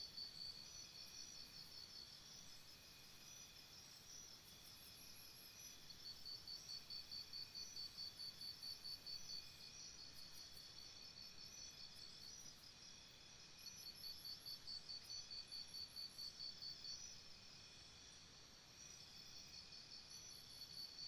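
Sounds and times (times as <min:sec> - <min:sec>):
cricket chirping: 0:00.0 - 0:21.0
faint crickets chirping: 0:00.0 - 0:21.0.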